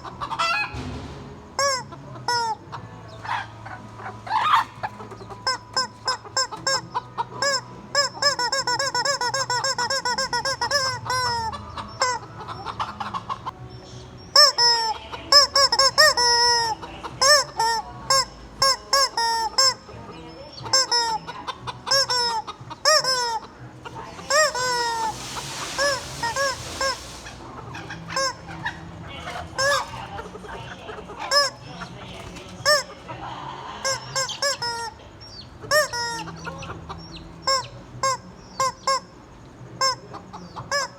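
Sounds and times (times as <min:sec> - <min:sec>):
rubber chicken toy squawking: 0:00.0 - 0:00.8, 0:01.6 - 0:13.6, 0:14.3 - 0:33.1, 0:33.7 - 0:40.9
burst of hiss: 0:24.3 - 0:27.6.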